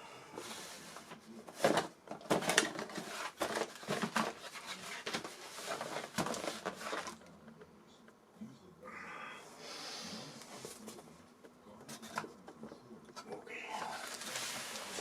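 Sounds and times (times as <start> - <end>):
packaging crinkling and rustling: 1.0 - 7.3, 13.8 - 15.0.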